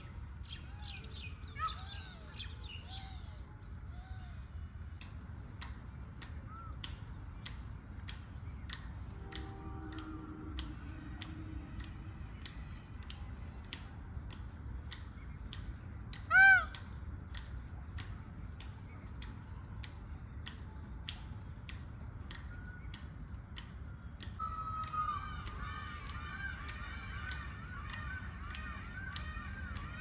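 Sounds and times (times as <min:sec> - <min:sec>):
peafowl call: 0:16.3 - 0:16.8.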